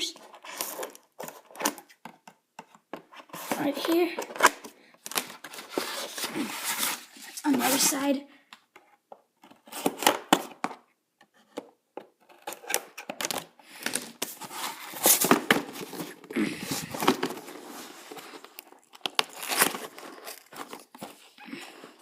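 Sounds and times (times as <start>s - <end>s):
cardboard box tearing and scraping: 5.5s - 8.0s, 14.3s - 21.0s.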